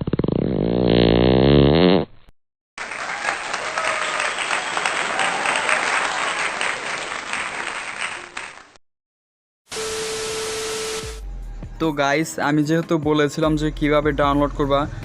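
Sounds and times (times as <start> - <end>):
audience applause: 2.8 - 8.8
steady single tone with hiss: 9.7 - 11.1.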